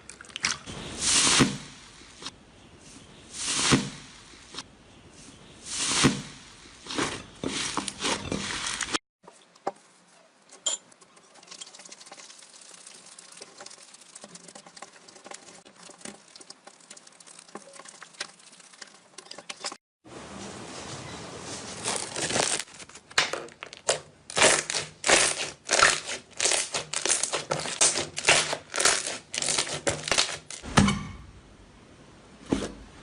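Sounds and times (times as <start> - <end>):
slime squishing: 21.8 - 30.6.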